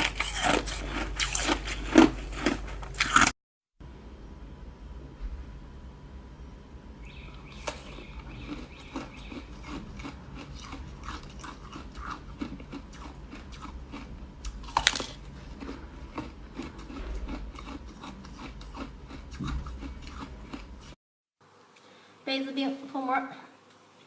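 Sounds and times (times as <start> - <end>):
ice being chewed: 0.0 - 3.3, 7.3 - 21.0.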